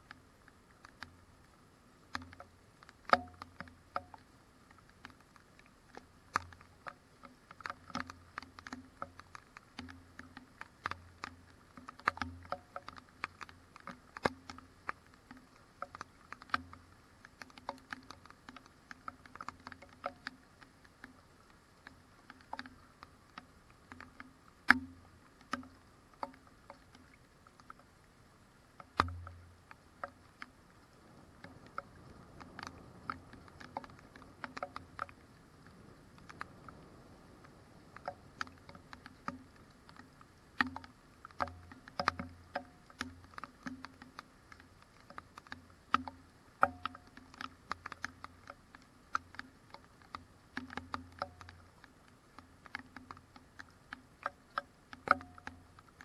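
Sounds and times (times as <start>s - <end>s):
raindrops tapping on surface: 0.0s - 28.1s, 28.7s - 56.0s.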